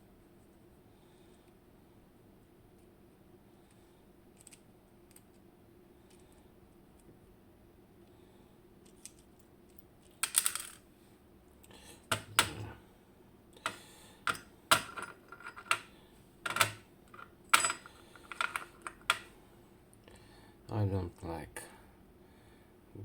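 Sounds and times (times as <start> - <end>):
metal lock parts clicking: 16.5 - 19.3.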